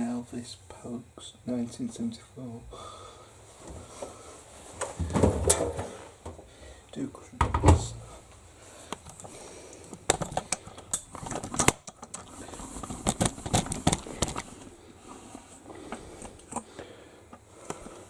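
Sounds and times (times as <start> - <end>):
objects being handled: 7.4 - 18.0.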